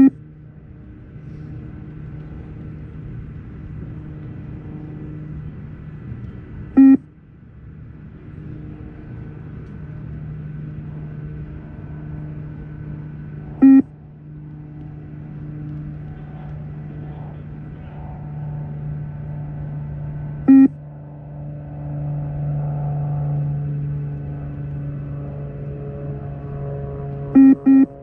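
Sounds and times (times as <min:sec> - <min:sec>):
steady low hum: 0:00.0 - 0:28.0
short electronic beeps: 0:06.8 - 0:07.0, 0:13.6 - 0:13.9, 0:20.5 - 0:20.7, 0:27.4 - 0:27.9.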